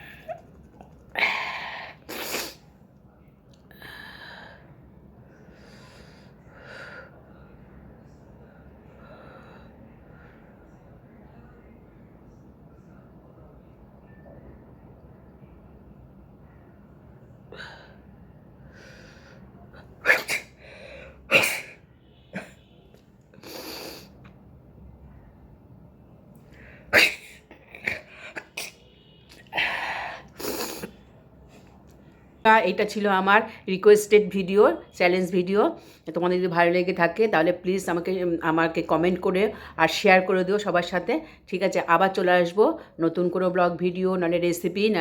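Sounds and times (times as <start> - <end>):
person sneezing: 20.0 - 20.6, 21.3 - 22.6, 26.9 - 28.8.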